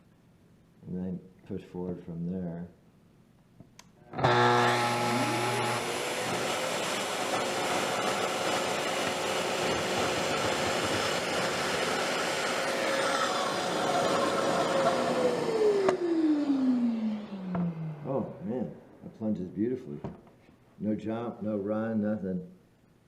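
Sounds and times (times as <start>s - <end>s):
circular saw motor whine: 4.2s - 8.6s, 10.0s - 18.5s
dust extractor running: 4.2s - 18.7s.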